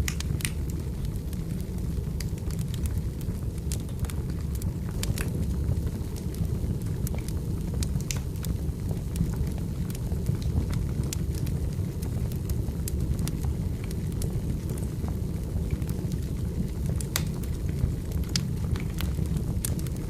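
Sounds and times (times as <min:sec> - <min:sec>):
low rumble of flames: 0:00.0 - 0:20.0
wood crackling and popping: 0:00.0 - 0:20.0.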